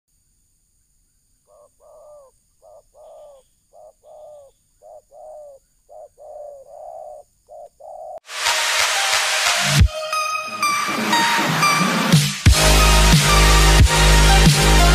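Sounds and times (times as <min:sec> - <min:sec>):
dove cooing: 0:01.4 - 0:08.2.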